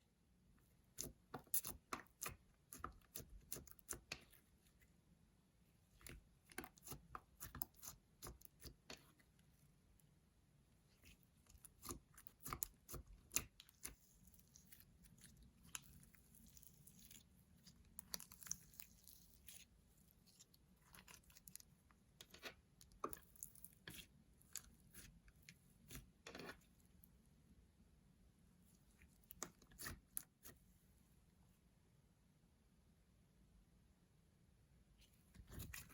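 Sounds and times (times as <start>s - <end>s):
slime squishing with clicks and pops: 0.9s - 4.5s, 5.9s - 9.3s, 11.0s - 19.7s.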